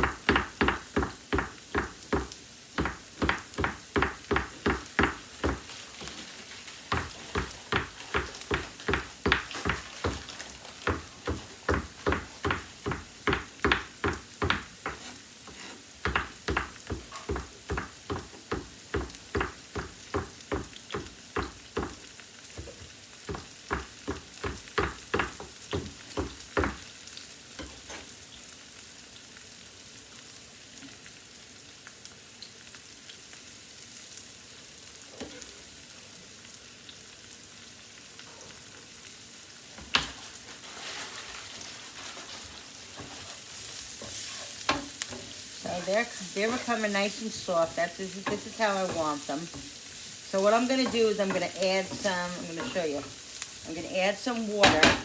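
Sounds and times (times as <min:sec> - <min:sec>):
knife chopping on cutting board: 0:00.0 - 0:06.1, 0:06.9 - 0:22.0, 0:22.6 - 0:26.8, 0:50.6 - 0:53.2
mushrooms sizzling in frying pan: 0:00.0 - 0:55.0.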